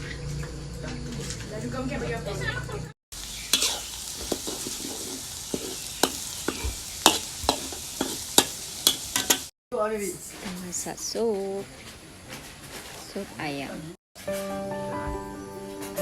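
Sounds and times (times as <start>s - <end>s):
food sizzling in a pan: 3.1s - 9.5s.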